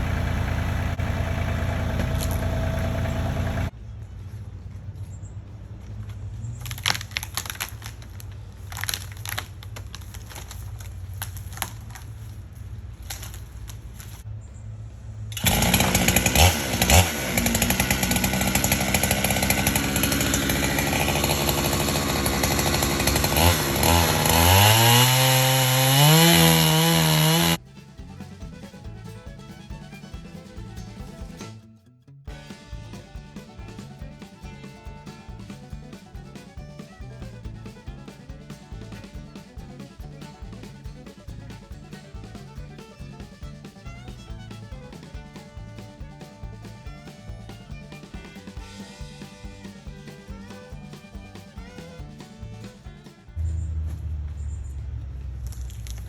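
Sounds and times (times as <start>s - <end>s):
chainsaw cutting log: 0.0s - 3.7s, 15.4s - 27.6s
engine idling: 0.0s - 56.0s.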